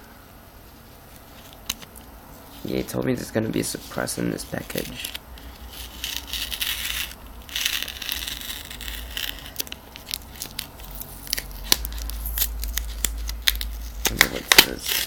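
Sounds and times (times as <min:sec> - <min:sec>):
packaging crinkling and rustling: 0:03.6 - 0:15.0.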